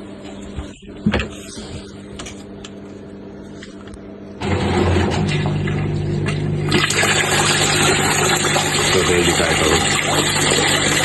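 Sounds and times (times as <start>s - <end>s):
washing machine spinning hum: 0.0s - 11.0s
drain pump humming: 4.4s - 11.0s.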